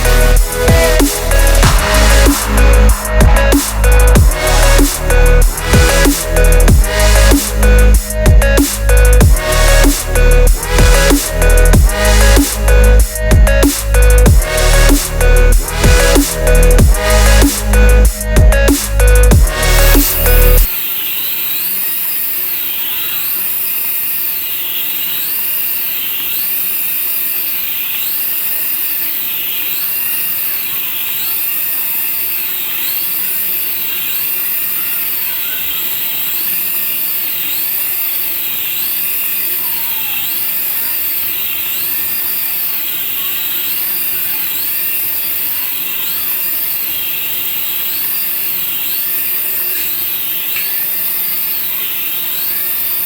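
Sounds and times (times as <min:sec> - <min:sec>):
high tone rising and falling: 0:00.0 - 0:20.8
toy motor whirring: 0:00.0 - 0:53.0.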